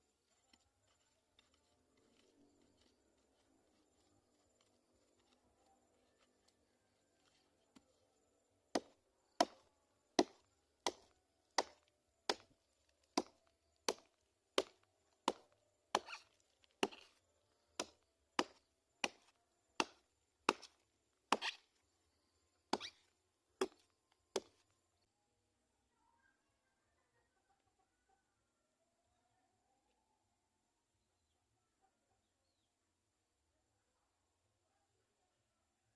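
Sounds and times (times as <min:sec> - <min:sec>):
blade chopping into tree trunk: 0:17.8 - 0:21.6.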